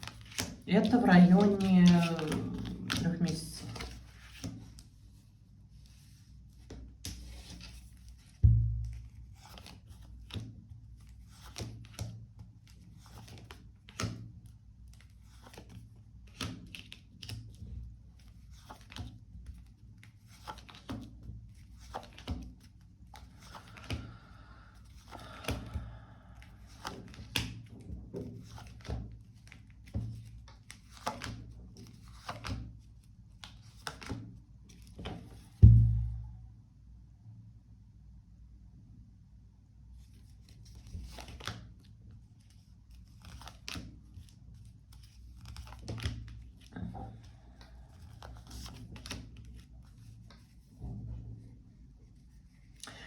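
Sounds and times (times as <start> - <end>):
card rustle: 0.0 - 4.9.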